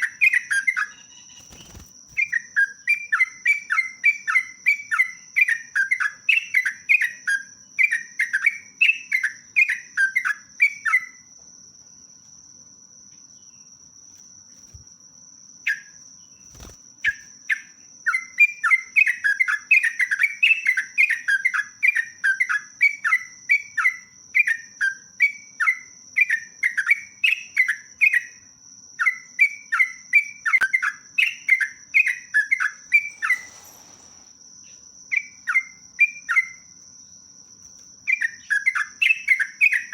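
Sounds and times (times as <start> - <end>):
bird singing rapid chirps: 0.0 - 11.2, 29.0 - 36.8, 38.1 - 39.9
faint steady high whine: 0.0 - 39.9.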